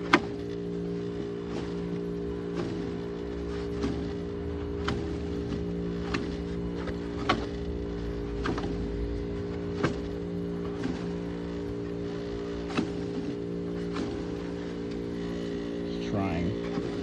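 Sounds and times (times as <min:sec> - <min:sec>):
blocked fan motor ticking: 0:00.0 - 0:16.6
air conditioner humming: 0:14.2 - 0:16.6.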